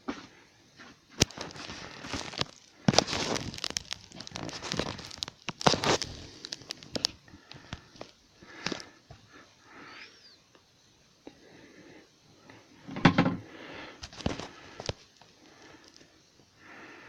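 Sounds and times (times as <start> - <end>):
crinkling rustling scuffles: 0.2 - 8.9, 14.0 - 15.1
sharp clicks and scrapes: 1.2 - 8.9.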